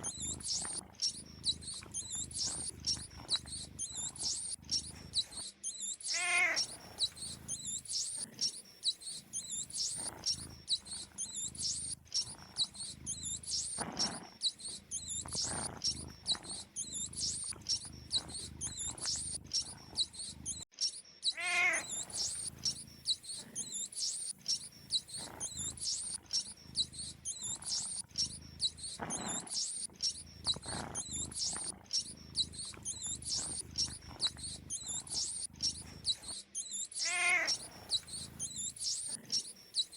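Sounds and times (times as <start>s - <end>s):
mice squeaking: 0.0s - 39.9s
cat meowing: 6.1s - 7.5s, 21.3s - 22.7s, 37.0s - 38.4s.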